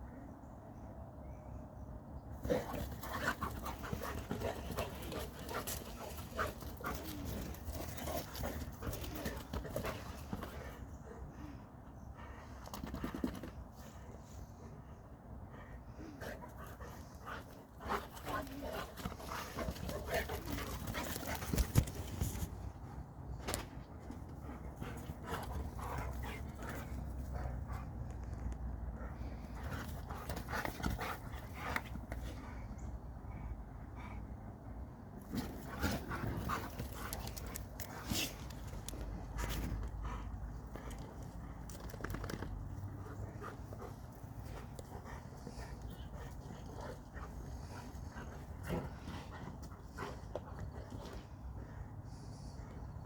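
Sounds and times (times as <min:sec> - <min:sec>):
dog panting: 0:15.6 - 0:22.0.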